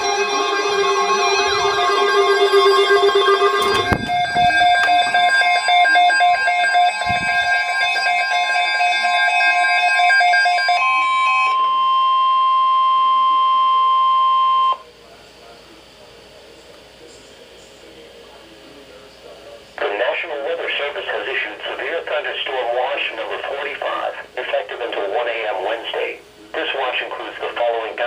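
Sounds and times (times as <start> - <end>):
steady warning tone: 0.0 - 19.1, 19.7 - 28.0
electronic buzz with rapid clicking: 0.1 - 8.6.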